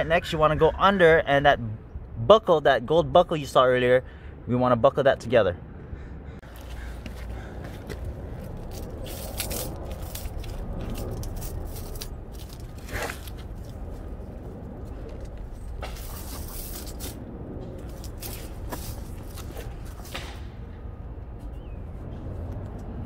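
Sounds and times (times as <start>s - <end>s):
steady low rumble: 5.6s - 23.0s
snow chain scraping and clicking: 8.6s - 13.4s.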